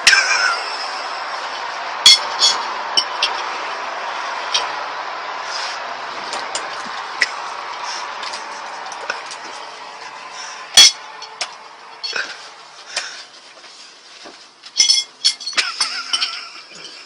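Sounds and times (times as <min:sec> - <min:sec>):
clinks and clicks: 0:02.1 - 0:03.4, 0:14.6 - 0:17.0.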